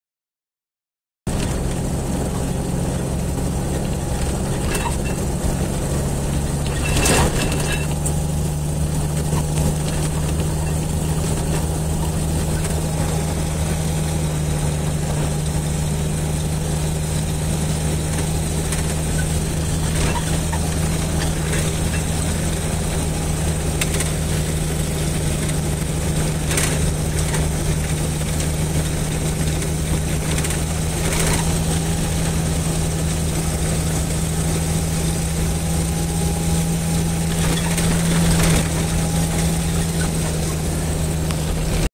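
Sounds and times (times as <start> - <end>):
car engine idling: 1.3 - 41.9.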